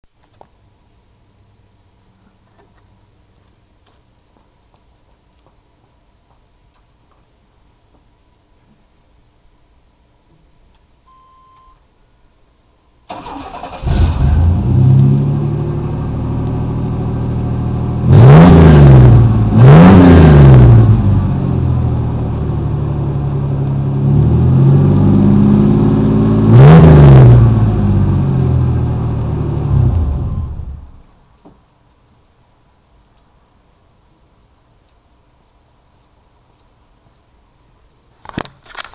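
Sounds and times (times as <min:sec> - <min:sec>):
pickup engine cranking and revving: 0:13.1 - 0:22.5, 0:23.4 - 0:30.8.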